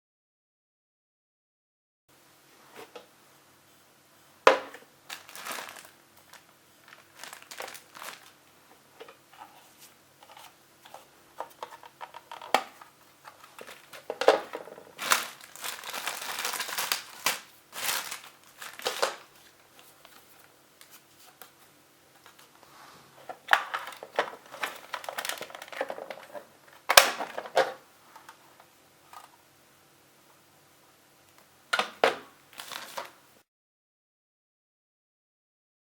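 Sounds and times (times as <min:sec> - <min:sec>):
crinkling: 0:04.4 - 0:29.3, 0:32.5 - 0:33.2.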